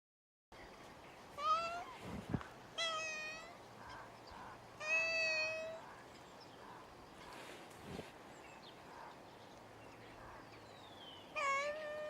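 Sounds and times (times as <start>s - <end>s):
cat meowing: 1.4s - 2.0s, 2.8s - 3.6s, 4.8s - 5.8s, 11.4s - 12.0s.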